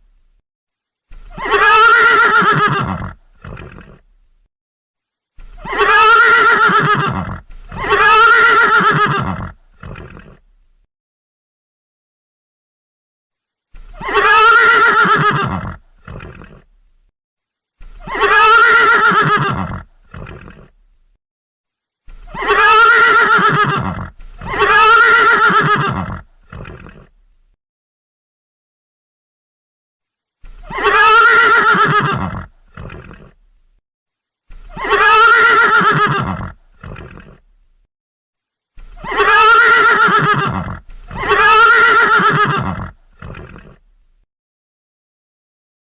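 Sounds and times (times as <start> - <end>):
pony whinnying: 1.2 - 4.1, 5.5 - 10.4, 13.8 - 16.7, 17.8 - 20.8, 22.2 - 27.2, 30.4 - 33.4, 34.5 - 37.5, 38.8 - 43.9.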